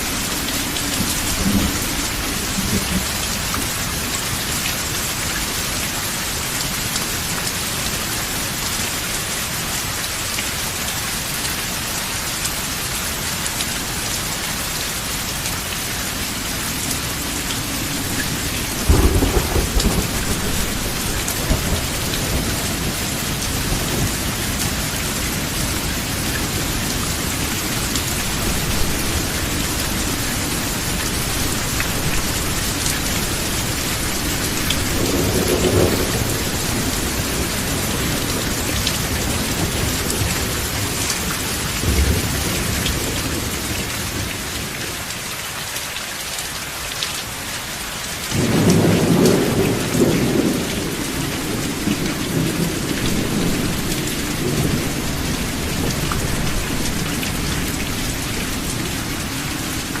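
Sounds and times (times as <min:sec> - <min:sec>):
steady rain falling: 0:00.0 - 1:00.0
thunder rumbling: 0:16.7 - 0:44.3, 0:48.4 - 1:00.0.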